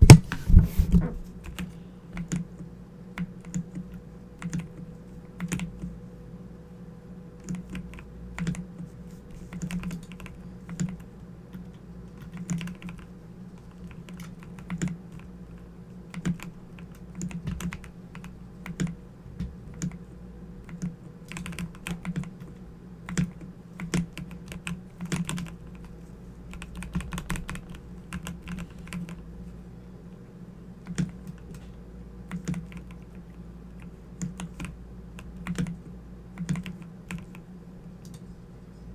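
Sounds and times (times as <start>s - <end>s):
keyboard key clicks: 0.0s - 1.6s
steady low hum: 0.0s - 14.1s.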